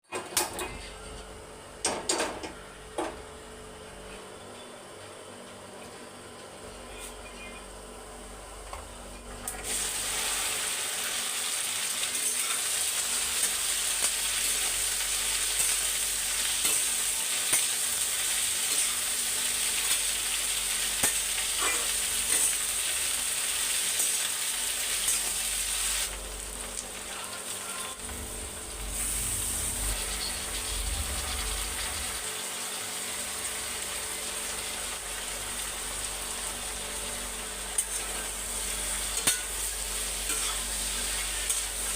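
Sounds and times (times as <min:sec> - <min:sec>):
okra sizzling in hot oil: 0:09.6 - 0:27.1, 0:28.2 - 0:41.9.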